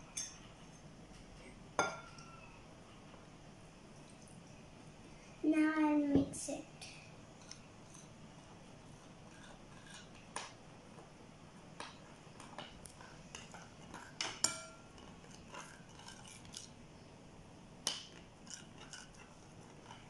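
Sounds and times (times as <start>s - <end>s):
spoon clinking against a bowl: 0.1s - 0.8s, 13.3s - 16.7s.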